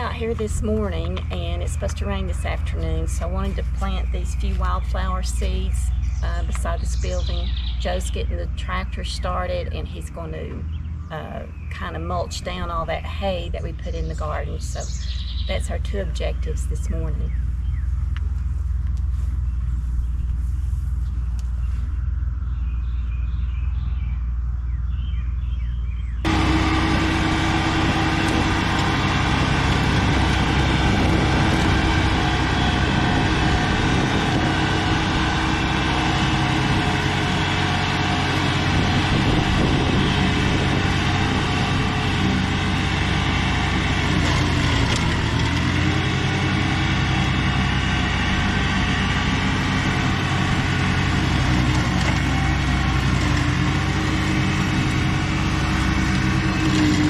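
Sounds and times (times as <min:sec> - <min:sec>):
tractor engine running: 0:00.0 - 0:57.0.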